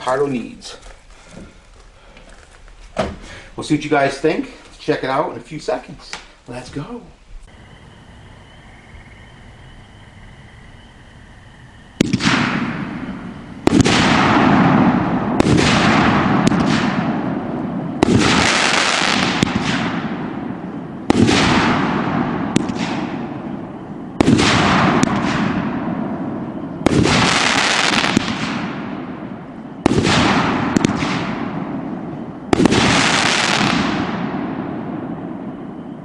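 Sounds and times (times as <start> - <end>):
firework crackle: 11.9 - 35.6
firework bangs: 12.0 - 36.0.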